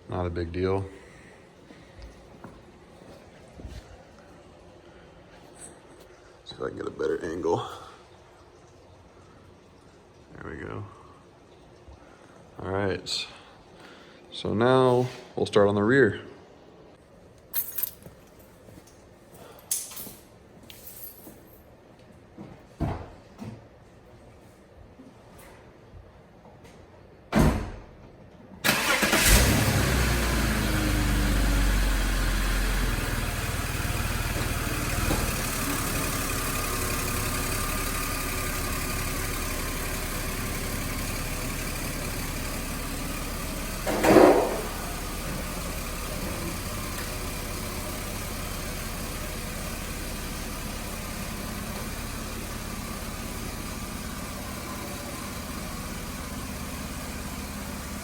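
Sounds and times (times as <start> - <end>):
car engine starting and idling: 28.6 - 58.0.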